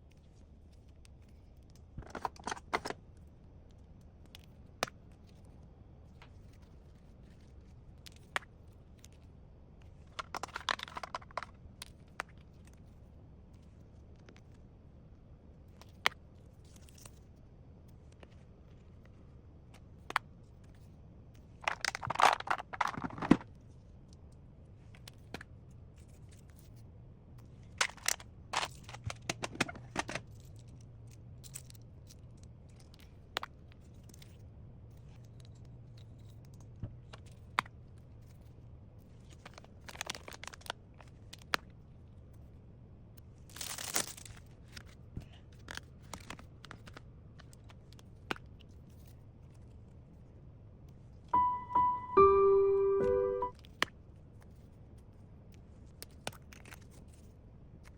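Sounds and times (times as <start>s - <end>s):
packaging tearing and crinkling: 43.5s - 44.4s.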